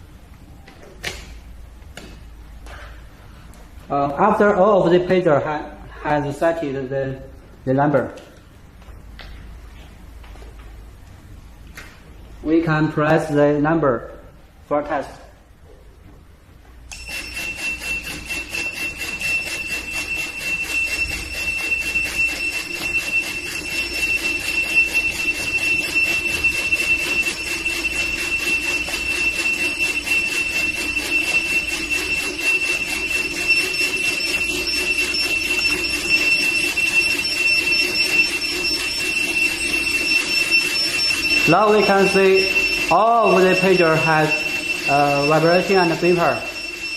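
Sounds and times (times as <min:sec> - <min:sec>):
pager vibration buzzing: 0:16.9 - 0:46.9
pagers beeping high-pitched: 0:16.9 - 0:46.9.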